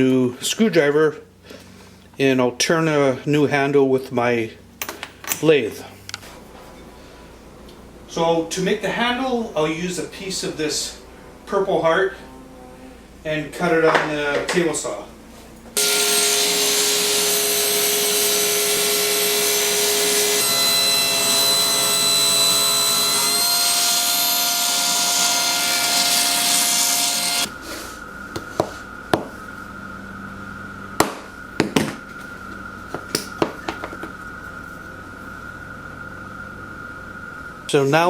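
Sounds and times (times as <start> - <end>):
faint steady hum: 0.0 - 38.0
table saw cutting wood: 15.8 - 27.8.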